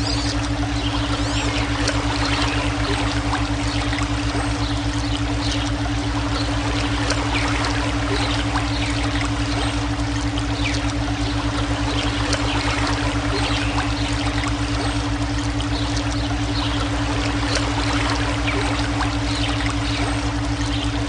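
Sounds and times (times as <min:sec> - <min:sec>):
low pulsing hum: 0:00.0 - 0:21.0
running water rushing: 0:00.0 - 0:21.0.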